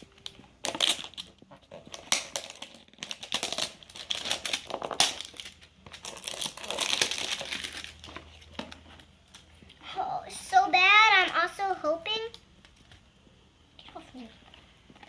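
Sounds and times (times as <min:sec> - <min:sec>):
foil packaging crinkling: 0:00.6 - 0:08.5.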